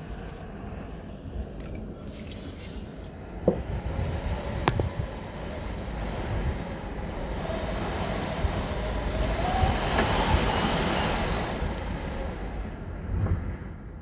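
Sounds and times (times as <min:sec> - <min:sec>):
strong wind gusting: 0:03.2 - 0:14.0
thin wind whistle: 0:03.8 - 0:13.0.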